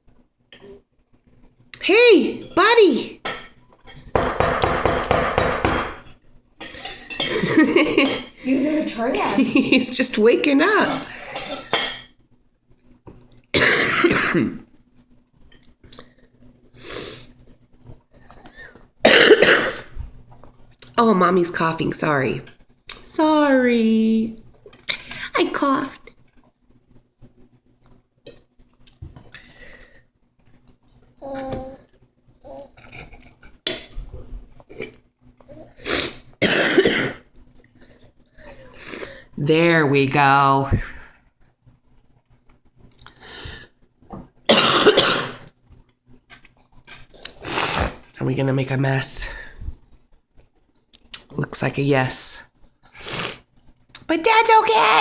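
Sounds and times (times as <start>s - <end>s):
woman coughing: 13.6s - 14.6s, 19.1s - 19.9s, 36.4s - 37.2s, 44.5s - 45.4s.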